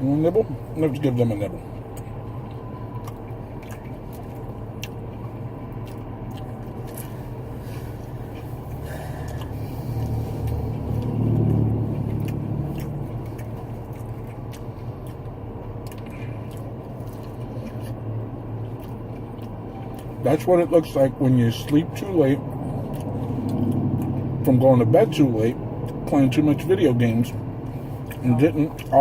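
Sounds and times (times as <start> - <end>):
steady low hum: 0.0 - 29.0
crunchy chewing: 1.8 - 20.2, 22.6 - 24.3.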